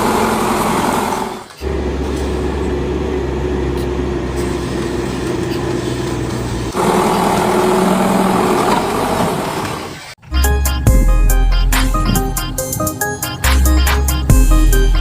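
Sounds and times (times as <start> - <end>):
electric motors whirring: 0.0 - 10.2.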